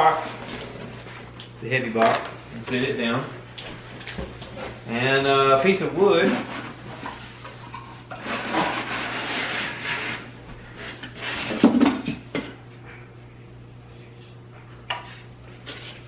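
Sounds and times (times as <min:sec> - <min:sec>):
rubbing and scraping packaging: 0:06.2 - 0:11.8.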